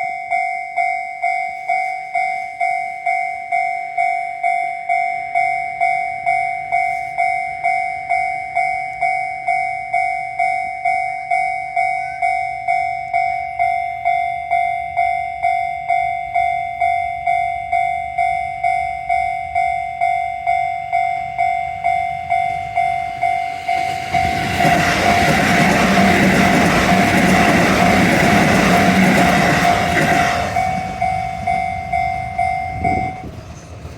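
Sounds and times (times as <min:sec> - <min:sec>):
level-crossing alarm ringing: 0:00.0 - 0:33.9
train running: 0:18.6 - 0:33.9.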